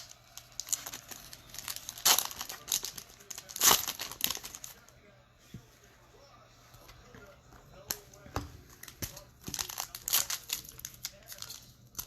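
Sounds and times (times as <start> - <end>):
wrappers crinkling and tearing: 0.0 - 4.9, 8.8 - 12.0.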